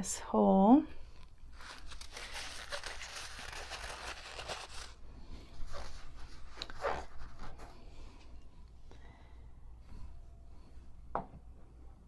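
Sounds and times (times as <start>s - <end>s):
hands rustling and rubbing: 1.5s - 7.8s.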